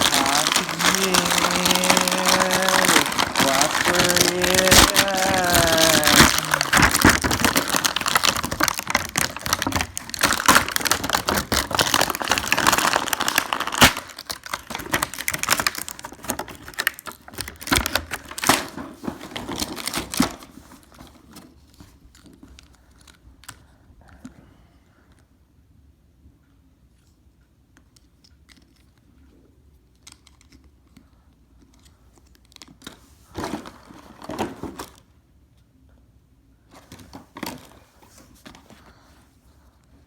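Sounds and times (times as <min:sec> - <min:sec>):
toy packaging crinkling and tearing: 0:00.0 - 0:23.7, 0:29.9 - 0:30.7, 0:31.6 - 0:35.0, 0:36.9 - 0:37.8.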